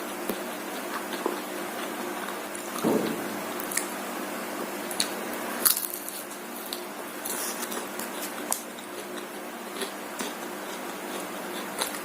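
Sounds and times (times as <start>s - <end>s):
food crunching: 4.9s - 12.0s
person chewing food: 4.9s - 12.0s.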